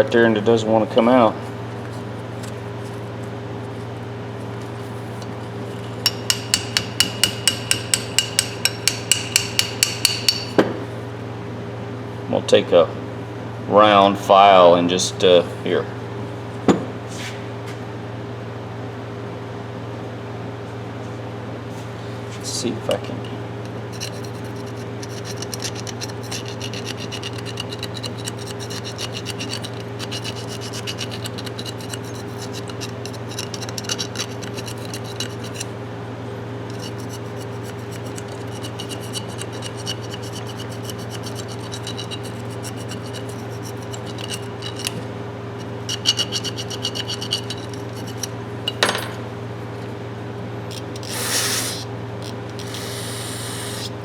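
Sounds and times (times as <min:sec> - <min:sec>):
file rasping on steel: 0:23.9 - 0:35.7, 0:36.7 - 0:45.0, 0:45.6 - 0:48.4, 0:50.8 - 0:51.9, 0:52.5 - 0:54.0
short hiss: 0:51.0 - 0:51.9.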